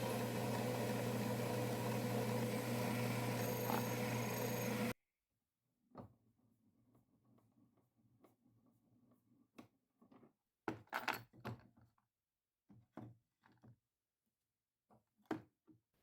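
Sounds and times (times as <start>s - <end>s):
knocks and clatters of objects: 10.0s - 11.9s.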